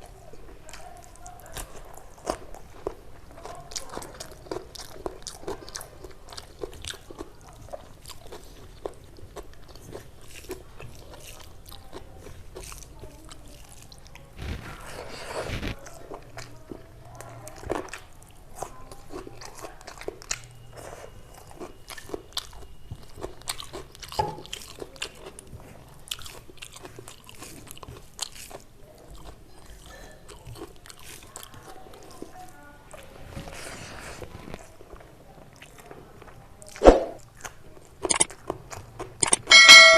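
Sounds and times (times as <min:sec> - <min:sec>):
crunchy chewing: 0:00.0 - 0:39.6
wet mouth clicks: 0:38.0 - 0:38.3, 0:39.2 - 0:39.5.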